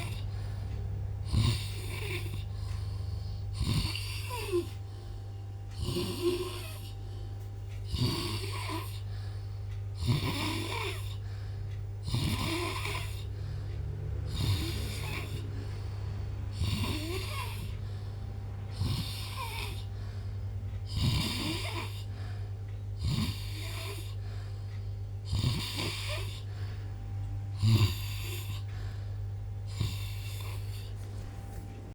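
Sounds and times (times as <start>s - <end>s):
man snoring: 0.0s - 0.6s, 1.2s - 5.1s, 5.8s - 7.1s, 7.8s - 9.2s, 10.0s - 11.3s, 12.0s - 22.4s, 23.0s - 24.3s, 25.2s - 26.6s, 27.5s - 28.8s, 29.6s - 31.0s.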